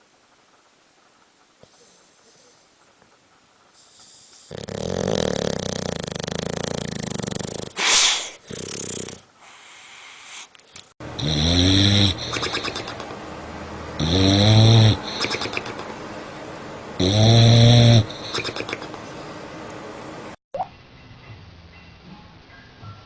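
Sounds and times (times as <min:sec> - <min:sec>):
dog snoring: 0:03.8 - 0:09.3, 0:11.1 - 0:13.0, 0:14.0 - 0:15.9, 0:17.0 - 0:18.9
short sharp breaths: 0:07.8 - 0:08.4.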